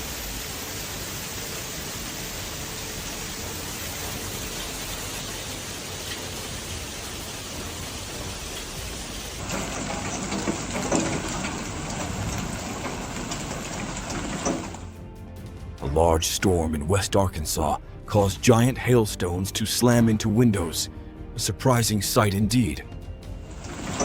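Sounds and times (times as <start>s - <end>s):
rough storm noise: 0.0s - 16.4s
heavy rain: 0.0s - 19.0s, 23.0s - 24.0s.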